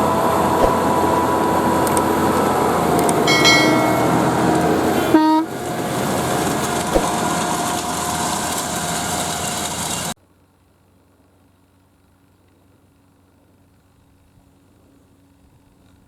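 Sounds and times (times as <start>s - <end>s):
tractor and seed drill running: 0.0s - 10.2s
brief pitched tone: 3.2s - 5.5s.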